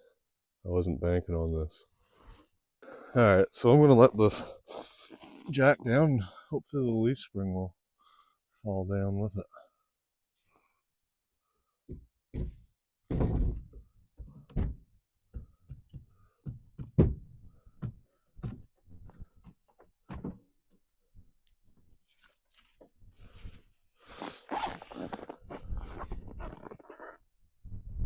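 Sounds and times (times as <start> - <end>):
axle knocks and thunks: 11.9 - 20.4.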